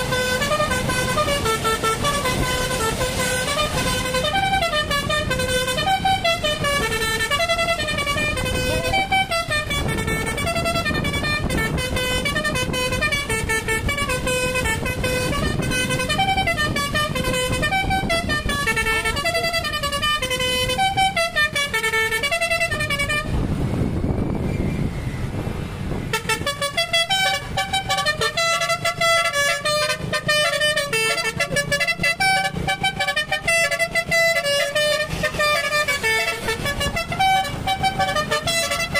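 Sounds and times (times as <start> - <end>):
bus horn playing a melody: 0.0 - 24.4, 25.8 - 38.9.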